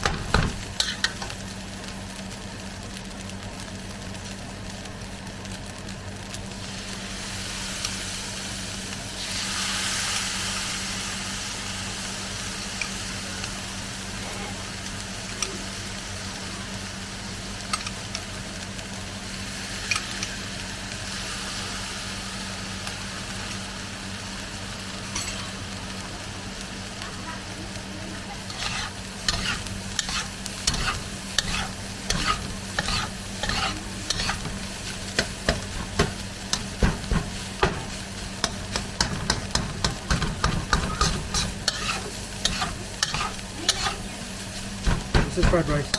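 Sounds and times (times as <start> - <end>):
rice sizzling in a hot pan: 0.0 - 45.9
steady low hum: 24.1 - 45.9
spatula scraping a pan: 28.4 - 45.9.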